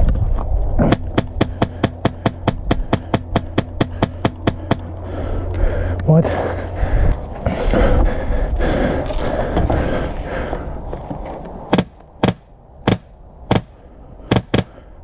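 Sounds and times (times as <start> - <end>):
airsoft rifle shots: 11.7 - 14.8.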